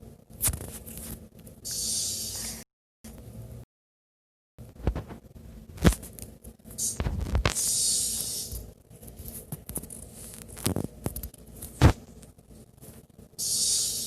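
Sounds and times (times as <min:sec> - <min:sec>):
breathy hiss: 0:01.7 - 0:02.6, 0:07.6 - 0:08.5, 0:13.4 - 0:14.0.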